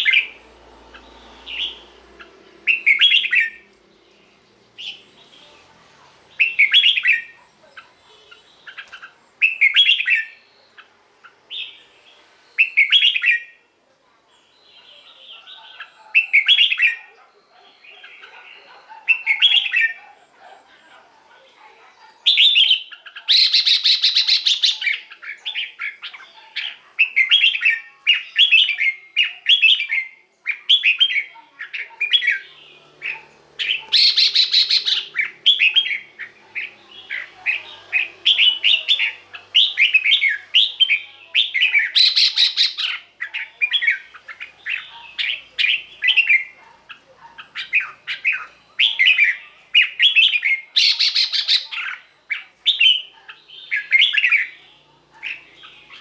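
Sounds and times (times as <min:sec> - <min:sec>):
harsh rasping bird call: 0:00.0 - 0:03.7, 0:32.4 - 0:43.2
bird warbling song: 0:00.0 - 0:13.6, 0:22.0 - 0:56.0.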